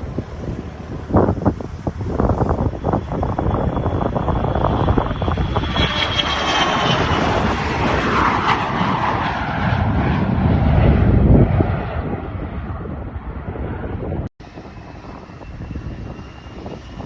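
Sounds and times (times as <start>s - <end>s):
jet engines roaring past: 0.0s - 17.0s.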